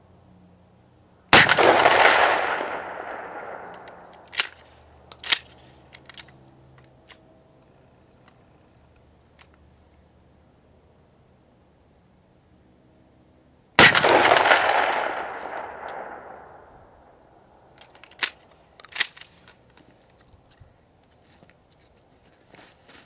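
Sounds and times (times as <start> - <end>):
shotgun blast with echo: 1.4 - 3.7, 13.8 - 16.6.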